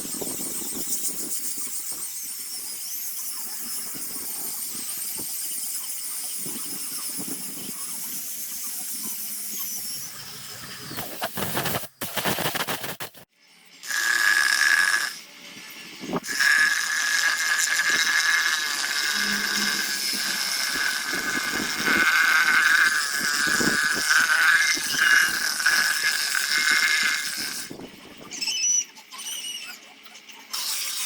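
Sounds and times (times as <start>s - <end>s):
power tool grinding wood: 13.8s - 15.2s, 16.2s - 27.8s.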